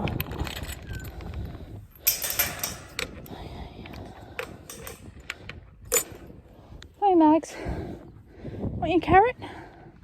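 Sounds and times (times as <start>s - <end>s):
low rumble of handling noise: 0.0s - 6.6s
clattering rattle: 1.9s - 3.4s, 4.4s - 5.3s.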